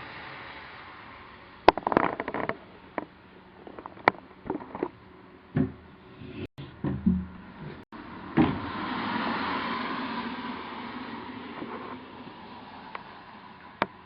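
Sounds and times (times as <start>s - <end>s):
sharp clicks and knocks: 1.7s - 5.0s
dull thump: 5.5s - 5.9s, 6.6s - 7.8s.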